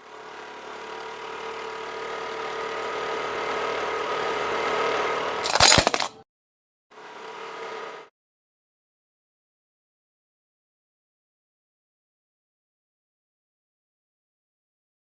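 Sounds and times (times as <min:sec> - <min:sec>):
mechanical hum with held tones: 0:00.0 - 0:06.2, 0:07.0 - 0:08.1.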